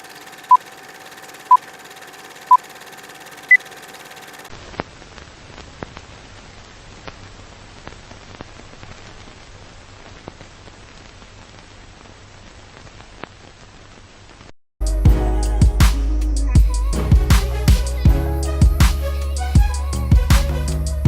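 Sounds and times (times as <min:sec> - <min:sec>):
film crackle hiss: 0:00.0 - 0:14.6
low hum: 0:14.8 - 0:21.0.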